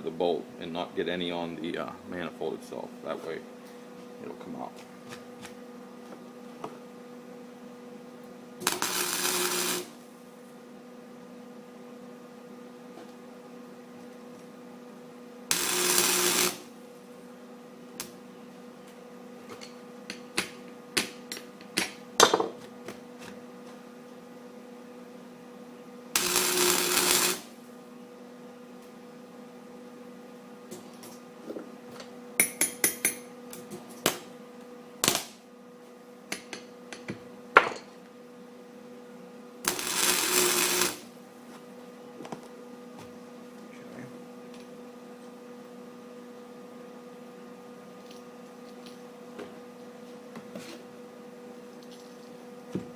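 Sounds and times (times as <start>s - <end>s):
steady hum: 0.0s - 18.9s, 24.5s - 37.5s, 38.2s - 47.7s
welding bursts: 8.6s - 10.0s, 15.5s - 16.7s, 26.2s - 27.6s, 35.0s - 35.4s, 39.6s - 41.2s.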